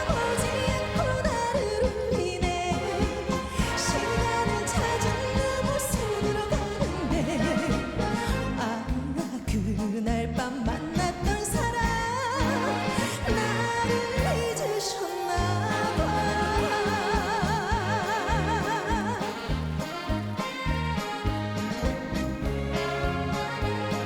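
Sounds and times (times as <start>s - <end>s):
trot song: 0.0s - 24.0s
vibrato vocal melody: 0.0s - 24.0s
steady bass beat: 15.6s - 24.0s.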